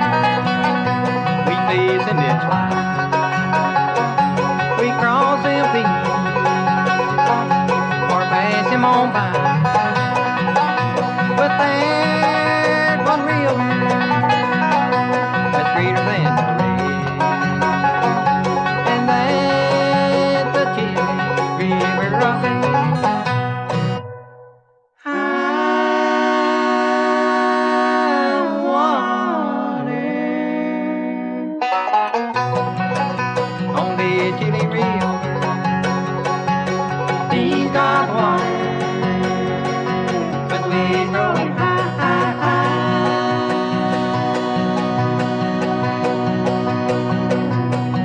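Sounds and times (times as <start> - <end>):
bluegrass string band playing: 0.0 - 24.2, 25.0 - 48.0
rapid picked banjo notes: 0.0 - 24.4, 25.1 - 48.0
voices singing harmony chord: 25.0 - 31.6, 37.3 - 47.6.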